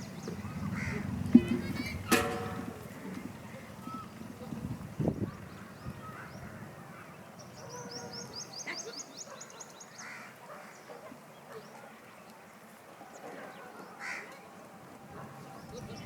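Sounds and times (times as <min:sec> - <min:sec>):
soft bird calls: 0:02.8 - 0:04.6.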